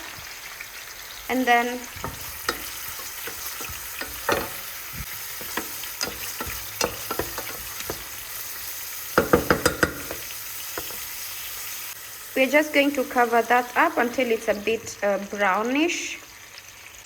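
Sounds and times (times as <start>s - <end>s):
oil crackling and popping: 0.0s - 12.2s
fish sizzling in hot oil: 0.0s - 17.0s.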